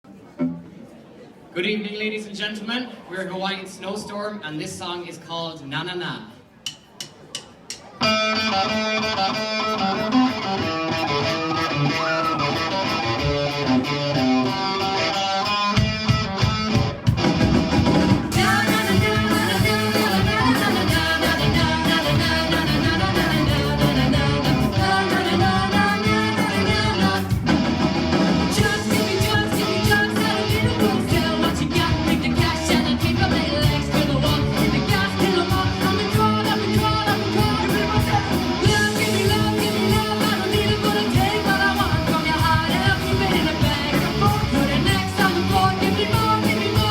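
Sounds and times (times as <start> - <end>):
rock band playing live: 6.6 - 46.9
person singing: 18.3 - 27.4, 28.6 - 46.9.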